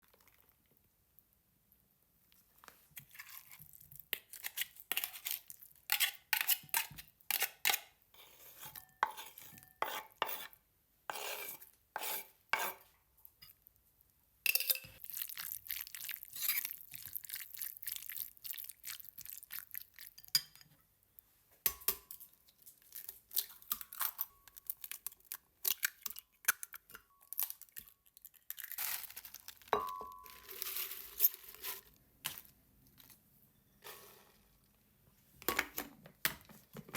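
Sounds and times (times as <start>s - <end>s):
utensils and dishes clinking: 14.5s - 15.0s, 29.7s - 31.8s.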